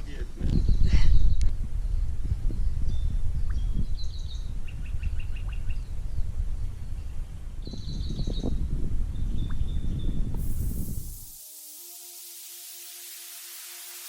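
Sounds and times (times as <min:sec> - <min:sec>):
small birds chirping: 0:00.5 - 0:11.2.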